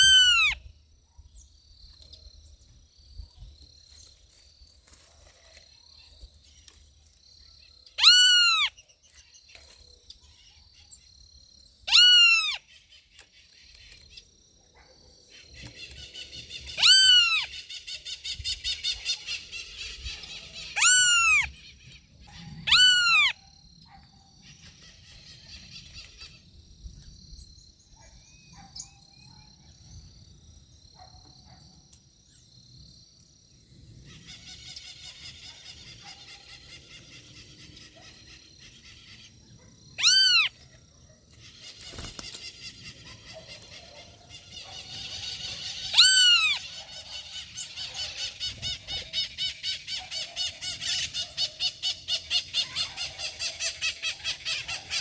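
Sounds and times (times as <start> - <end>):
loud short bird calls: 0.0 - 0.7, 8.0 - 8.9, 11.9 - 13.9, 15.3 - 23.4, 40.0 - 40.5, 41.4 - 55.0
small birds chattering: 41.3 - 55.0.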